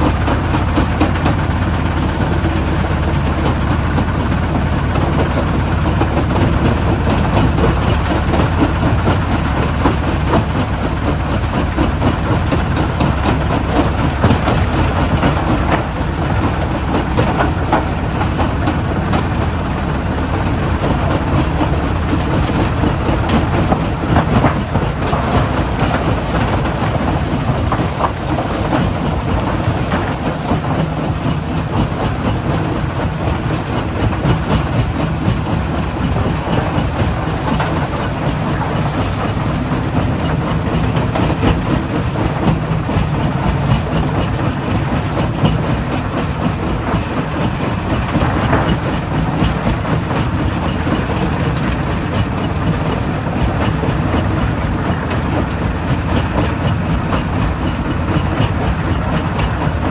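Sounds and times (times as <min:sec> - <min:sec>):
stone crusher machinery drone: 0:00.0 - 0:59.9.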